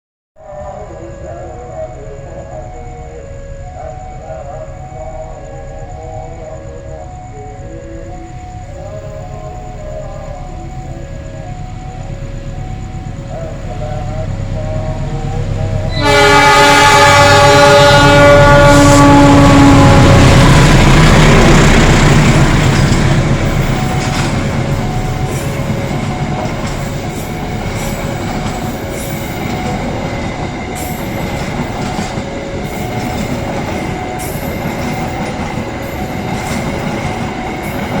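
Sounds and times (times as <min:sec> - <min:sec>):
train rumbling past: 0:00.4 - 0:38.0
train horn blast: 0:13.8 - 0:36.8
wheels clicking over rail joints: 0:22.2 - 0:38.0.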